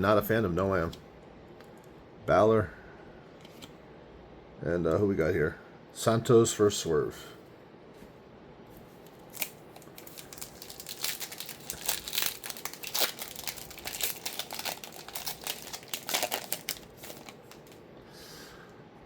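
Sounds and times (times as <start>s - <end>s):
foil wrapper tearing and crinkling: 9.0s - 17.8s.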